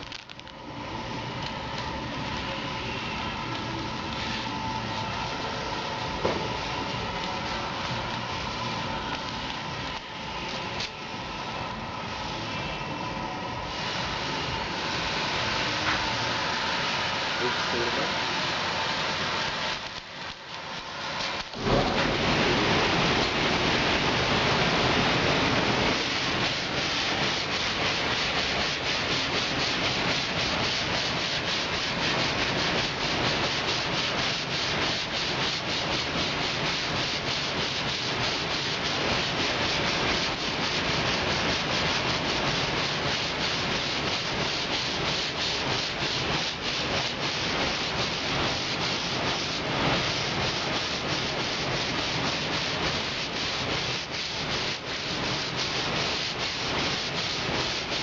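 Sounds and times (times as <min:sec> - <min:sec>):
sanding abrasive rubbing: 0:20.9 - 0:58.0.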